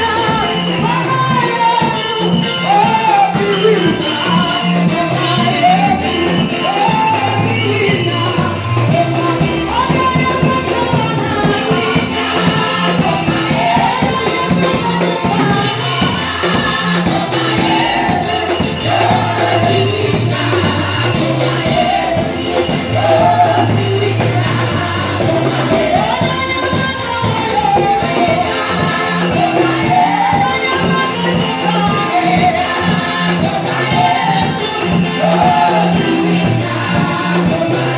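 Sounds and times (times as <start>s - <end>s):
gospel choir with instruments: 0.0s - 37.9s
repeating bass line: 3.4s - 37.9s.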